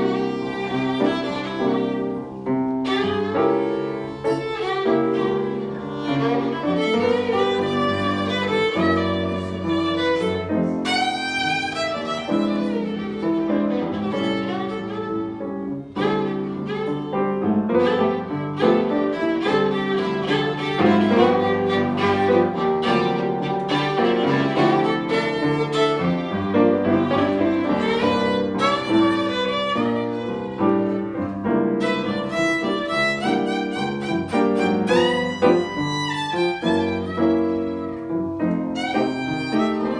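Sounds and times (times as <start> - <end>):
violin led instrumental music: 0.0 - 39.9.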